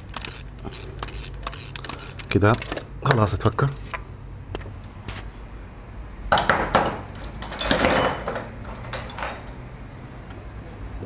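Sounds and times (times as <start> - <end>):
sharp clicks: 0.0 - 4.0
metal tools clinking: 0.0 - 4.1, 6.4 - 9.9.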